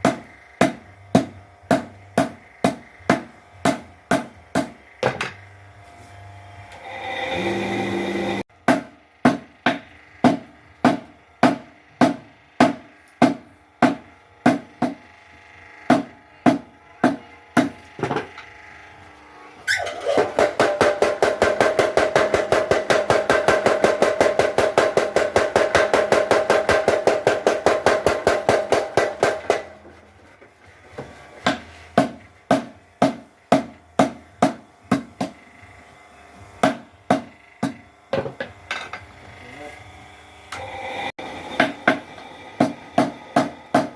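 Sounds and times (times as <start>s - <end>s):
power hammer striking metal: 0.0s - 5.4s, 6.8s - 15.0s, 19.7s - 29.8s, 36.6s - 39.0s, 40.5s - 43.9s
short rising whine: 6.7s - 8.4s.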